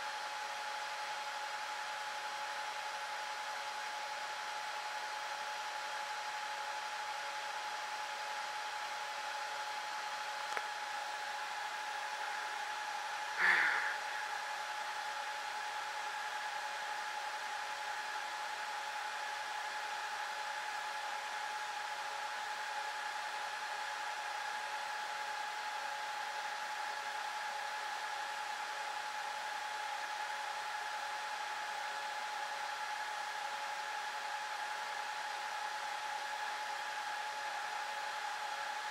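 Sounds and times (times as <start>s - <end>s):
server cooling fans whirring: 0.2s - 38.9s
short loud sound: 13.4s - 14.4s.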